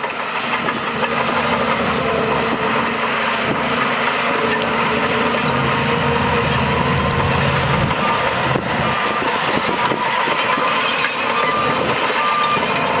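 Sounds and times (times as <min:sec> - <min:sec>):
heavy diesel machinery engine: 0:00.0 - 0:13.0
reversing alarm beeps: 0:11.1 - 0:13.0.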